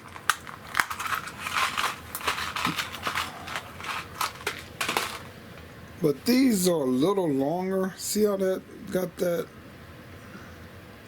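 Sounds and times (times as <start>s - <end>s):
crinkling: 0.0s - 5.3s.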